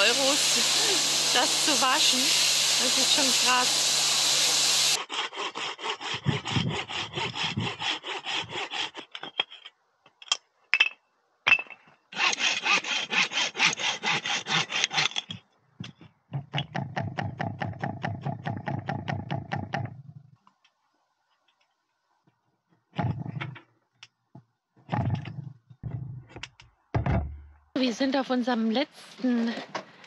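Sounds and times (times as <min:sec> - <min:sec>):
pressure washer hiss: 0:00.0 - 0:05.0
hand saw cutting wood: 0:00.0 - 0:09.4, 0:12.1 - 0:15.4.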